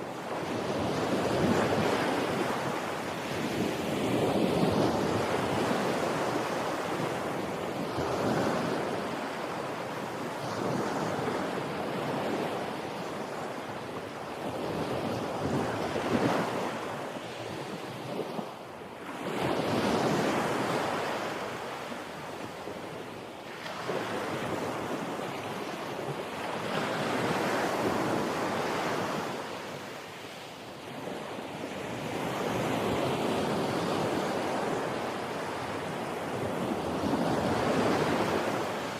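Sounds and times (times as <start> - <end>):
ocean waves breaking on beach: 0.0 - 38.9.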